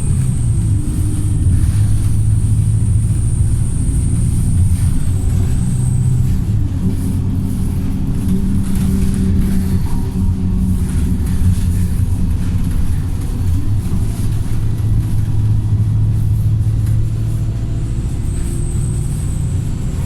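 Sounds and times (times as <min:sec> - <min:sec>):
bus engine drone: 0:00.0 - 0:20.0.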